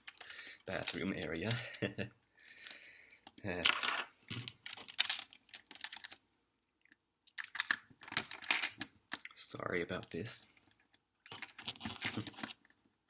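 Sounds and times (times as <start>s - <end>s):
plastic bricks clicking and rattling: 3.6s - 6.2s, 7.3s - 9.3s, 10.9s - 12.7s.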